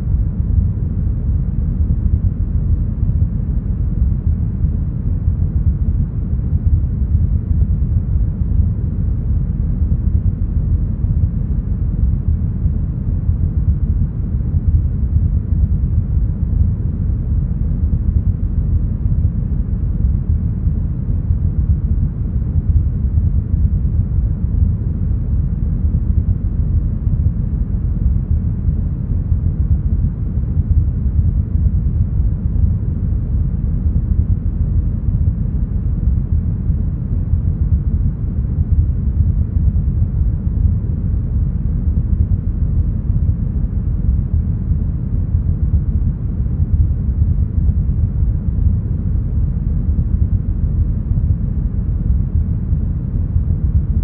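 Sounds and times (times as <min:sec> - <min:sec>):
deep brown noise: 0:00.0 - 0:54.0.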